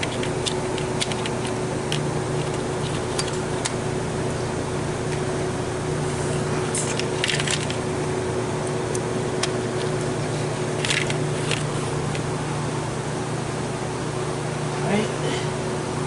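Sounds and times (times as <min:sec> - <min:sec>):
parts rustling and clicking: 0:00.0 - 0:03.8, 0:06.3 - 0:07.9, 0:08.9 - 0:12.3
steady machine hum: 0:00.0 - 0:16.0.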